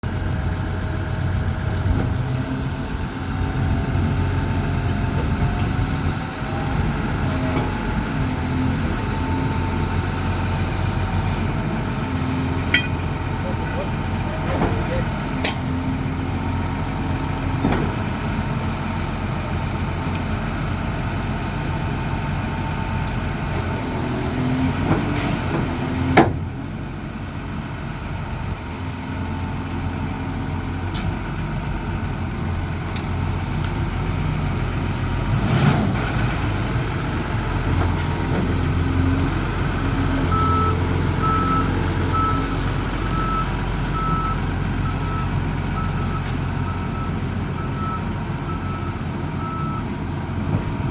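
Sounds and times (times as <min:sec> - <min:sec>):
diesel engine running: 0:00.0 - 0:50.9
reversing alarm beeps: 0:40.3 - 0:49.9.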